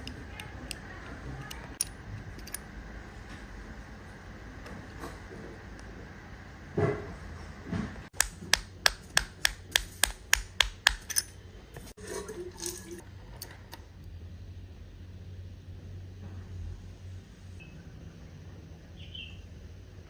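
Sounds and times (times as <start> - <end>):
sharp clicks in a series: 8.1 - 11.3.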